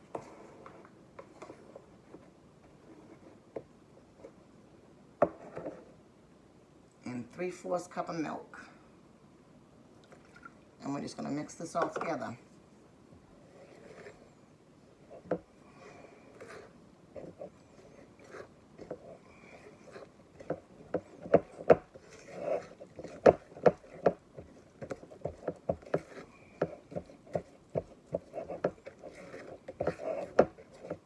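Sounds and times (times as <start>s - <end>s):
utensil stirring batter: 13.4s - 31.0s.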